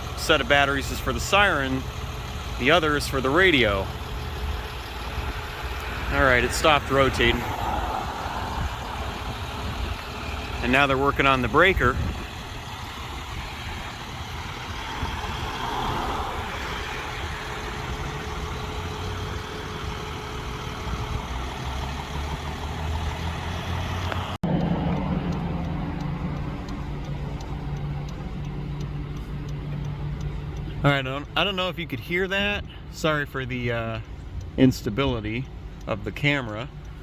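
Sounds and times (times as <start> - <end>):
outdoor background noise: 0.0 - 37.0
vehicle engine idling: 0.0 - 37.0
steady low hum: 24.4 - 37.0.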